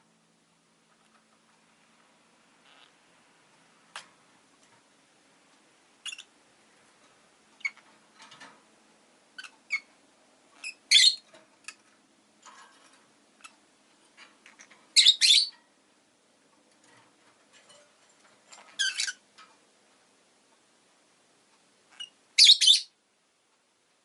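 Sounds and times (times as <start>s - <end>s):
lovebird chirping and squawking: 2.6s - 3.0s, 6.0s - 6.4s, 7.6s - 7.8s, 9.4s - 9.9s, 10.5s - 11.3s, 14.4s - 15.6s, 18.7s - 19.2s, 21.9s - 23.0s.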